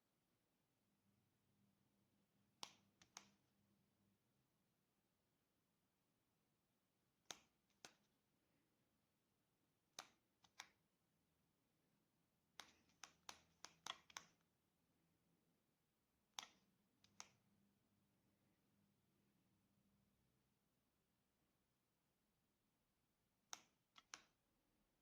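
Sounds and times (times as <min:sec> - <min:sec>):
faint sharp clicks: 0:02.6 - 0:03.4, 0:23.5 - 0:24.4.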